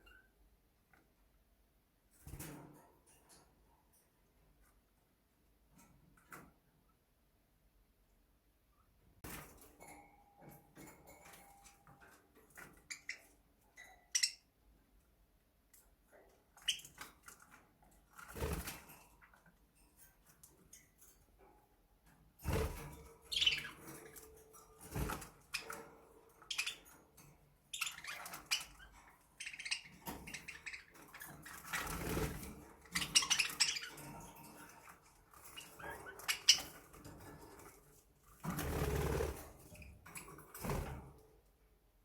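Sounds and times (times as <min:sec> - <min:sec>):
budgerigars chirping: 0:23.3 - 0:23.8, 0:32.9 - 0:34.0.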